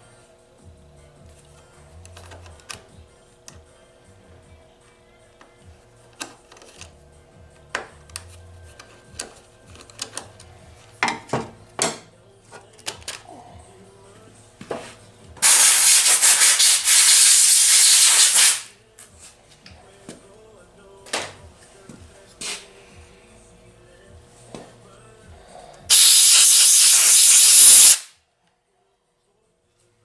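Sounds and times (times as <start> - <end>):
hand tools clicking and knocking: 7.7 - 13.3
loud steady hiss: 15.4 - 18.8, 25.9 - 28.2.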